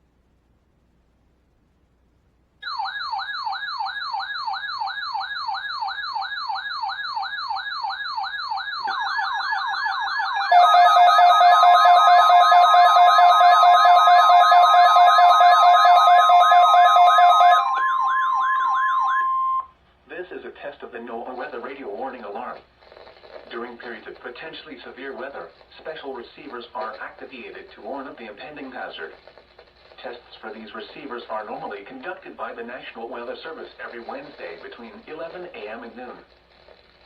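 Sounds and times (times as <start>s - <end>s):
electronic siren wail: 2.6s - 19.7s
steady alarm tone chord: 2.6s - 19.7s.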